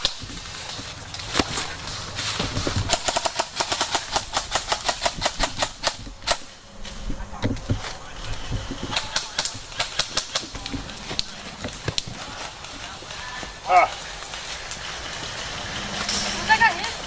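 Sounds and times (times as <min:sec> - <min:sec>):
airsoft guns firing: 0:00.0 - 0:06.7, 0:07.5 - 0:17.0.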